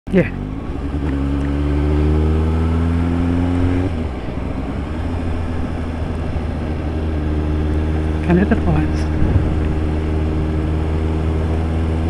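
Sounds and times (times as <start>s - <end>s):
motorcycle engine revving: 0.2s - 12.0s.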